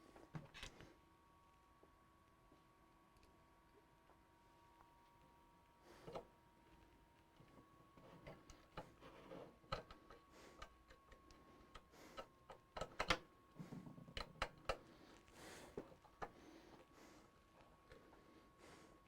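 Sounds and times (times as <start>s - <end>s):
clicks of computer hardware: 8.0s - 13.3s.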